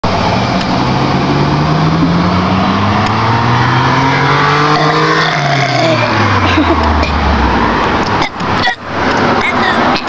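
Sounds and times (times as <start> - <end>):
girl burping: 4.7 - 7.2, 8.2 - 8.8.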